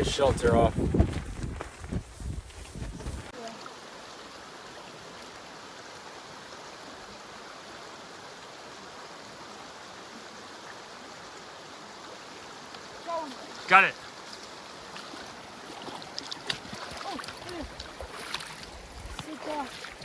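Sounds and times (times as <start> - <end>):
wind buffeting microphone: 0.0 - 3.4
stream rushing over rapids: 3.2 - 20.0.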